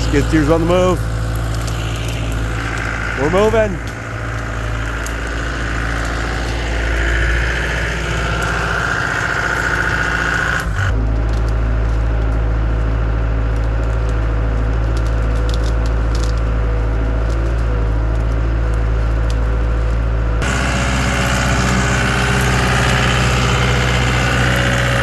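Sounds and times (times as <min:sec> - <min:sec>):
diesel engine running: 0:00.0 - 0:25.0
high engine whine: 0:00.0 - 0:25.0.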